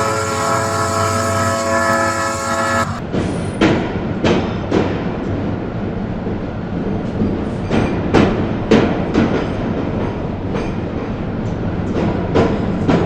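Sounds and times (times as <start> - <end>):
wheels clunking over rail joints: 0.0 - 3.3
train rumbling on rails: 0.0 - 13.0.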